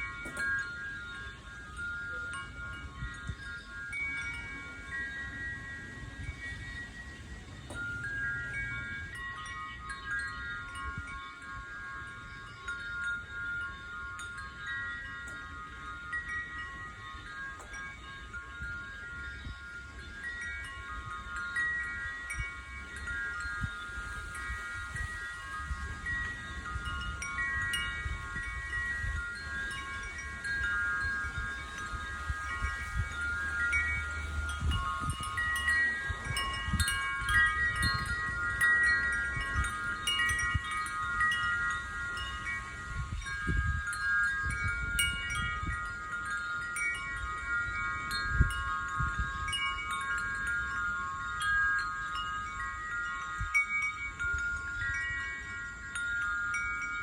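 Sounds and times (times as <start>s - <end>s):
wind chimes ringing: 0.0s - 57.0s.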